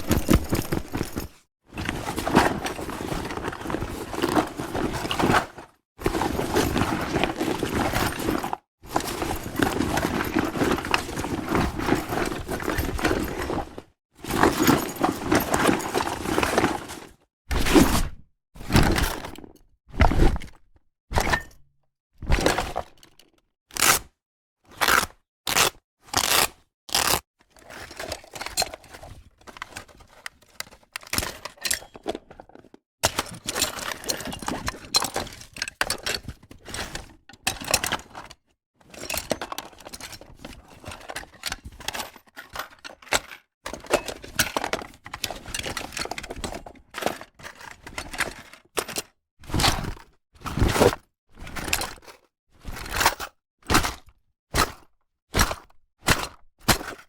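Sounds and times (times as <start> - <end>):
tool bag knocks: 0.0 - 1.4
rustling and rummaging: 0.0 - 20.6, 26.2 - 54.0.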